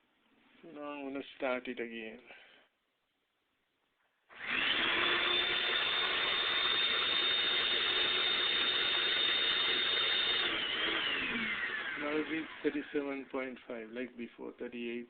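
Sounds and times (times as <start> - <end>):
vacuum cleaner motor whine: 4.3 - 13.2.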